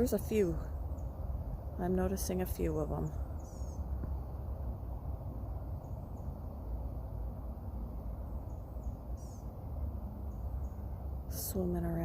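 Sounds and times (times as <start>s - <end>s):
faint high bird chirps: 2.6s - 4.3s, 8.4s - 9.6s.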